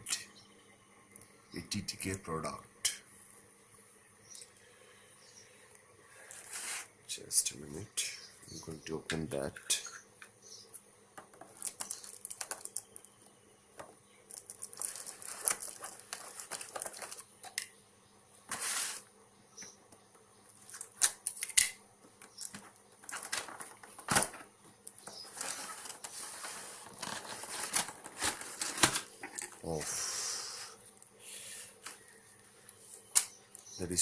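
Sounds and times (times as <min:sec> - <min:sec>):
packaging rustling and crinkling: 0:11.4 - 0:13.1, 0:14.3 - 0:17.3, 0:20.6 - 0:21.2, 0:22.4 - 0:24.4, 0:25.0 - 0:29.6.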